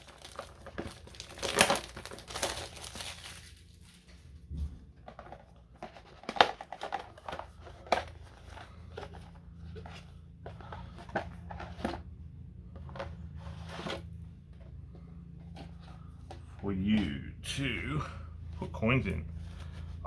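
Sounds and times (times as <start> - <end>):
packaging crinkling and rustling: 0.0 - 4.3, 5.0 - 10.0.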